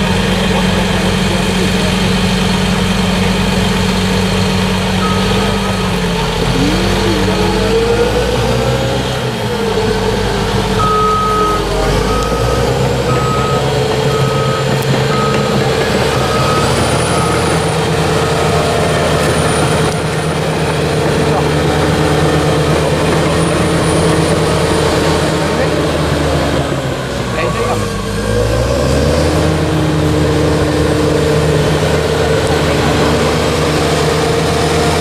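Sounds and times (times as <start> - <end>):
bulldozer diesel engine running: 0.0 - 35.0
reversing alarm beeping: 5.0 - 9.0, 9.6 - 19.8, 27.4 - 29.0.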